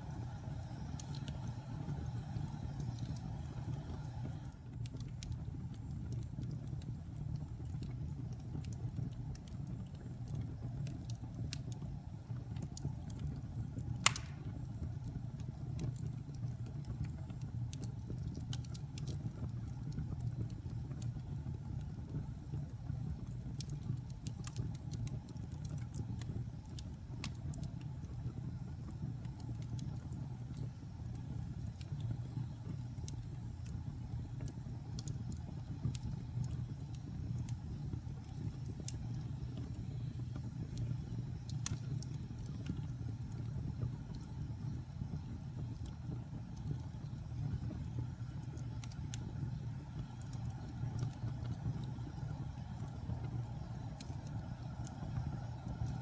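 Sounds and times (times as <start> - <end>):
rush of fire flames: 0.0 - 21.4, 23.2 - 56.0
fire crackles: 0.0 - 56.0
loud pop of fire: 14.0 - 14.7.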